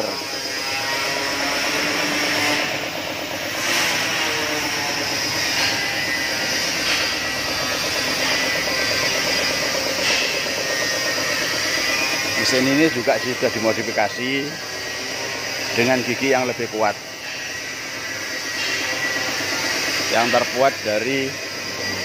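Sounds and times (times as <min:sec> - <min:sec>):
diesel engine running: 0:00.0 - 0:16.2
flour mill drone: 0:00.0 - 0:22.0.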